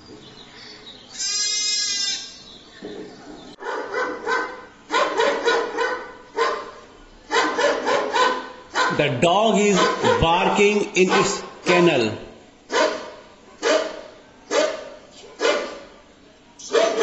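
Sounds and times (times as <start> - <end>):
dog barking: 3.6 - 9.0, 9.7 - 10.3, 11.1 - 11.5, 12.7 - 15.9, 16.6 - 17.0.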